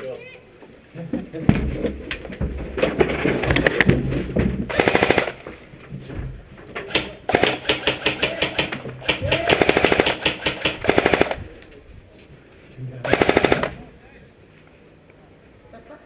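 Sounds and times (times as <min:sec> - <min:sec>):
airsoft rifles firing bursts: 0:04.7 - 0:05.4, 0:06.9 - 0:11.4, 0:13.0 - 0:13.8.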